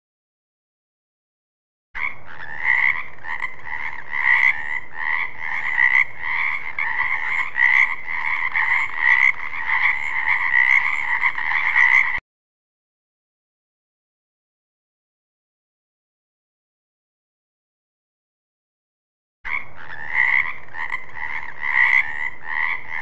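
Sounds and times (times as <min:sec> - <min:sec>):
frog croaking: 0:02.0 - 0:12.2, 0:19.5 - 0:23.0.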